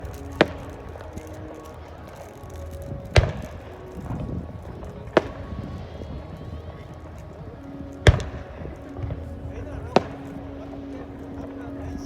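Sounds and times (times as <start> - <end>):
fireworks bangs: 0.0 - 5.9.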